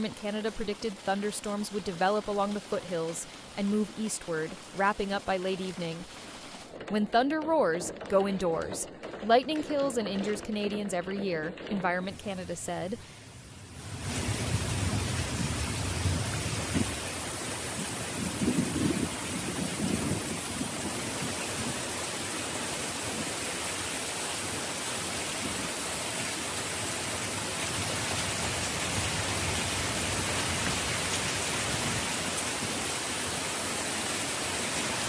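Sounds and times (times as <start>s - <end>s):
heavy rain falling: 0.0s - 6.8s, 12.1s - 35.0s.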